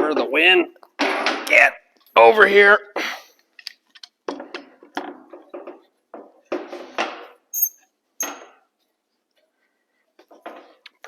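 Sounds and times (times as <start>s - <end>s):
sharp metallic clinks: 7.6s - 8.4s.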